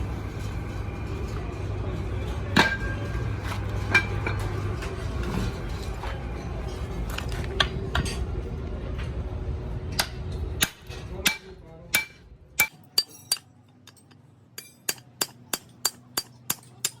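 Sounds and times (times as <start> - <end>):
hand tools tapping metal: 12.0 - 17.0.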